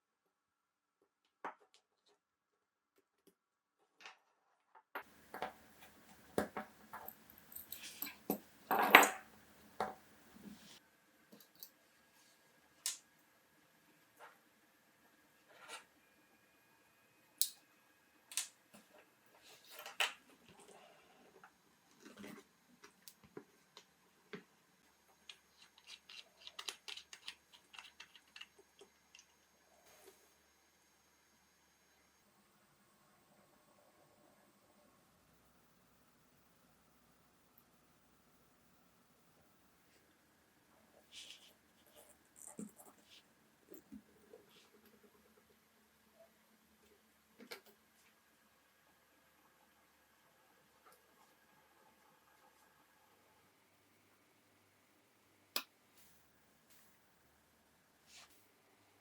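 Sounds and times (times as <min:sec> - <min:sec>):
faint hiss: 0:28.4 - 0:59.0.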